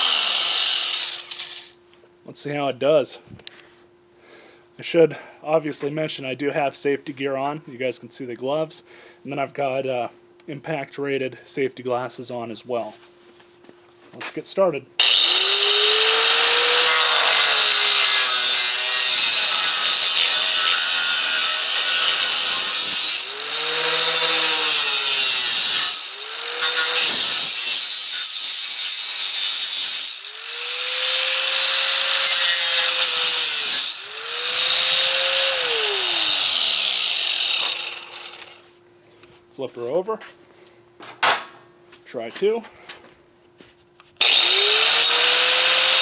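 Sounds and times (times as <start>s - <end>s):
angle grinder cutting metal rod: 0.0s - 1.7s, 15.0s - 38.6s, 44.2s - 46.0s.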